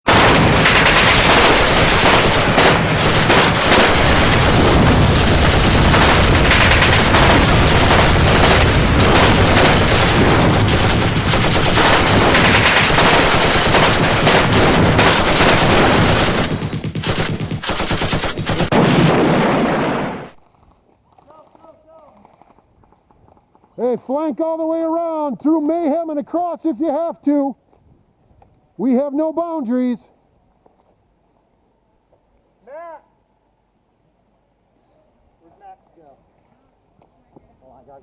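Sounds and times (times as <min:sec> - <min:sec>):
rapid gunfire bursts: 0:00.1 - 0:20.4.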